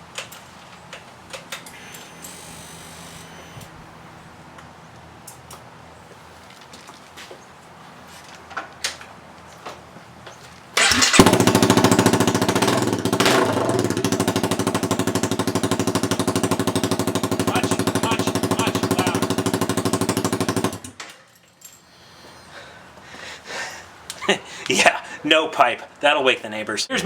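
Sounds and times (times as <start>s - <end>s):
motorcycle engine idling loudly: 10.8s - 20.9s.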